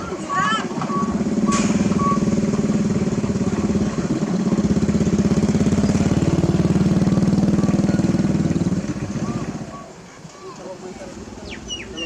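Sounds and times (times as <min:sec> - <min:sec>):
heavy diesel engine running: 0:00.0 - 0:09.8.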